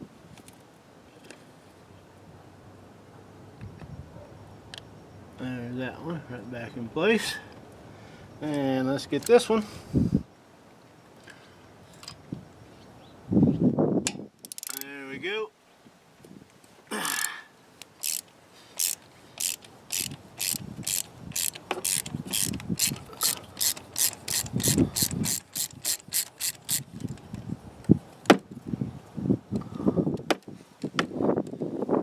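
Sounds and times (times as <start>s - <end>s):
ratchet wrench clicking: 14.4s - 14.9s, 17.1s - 27.2s
tool handling: 17.2s - 27.4s.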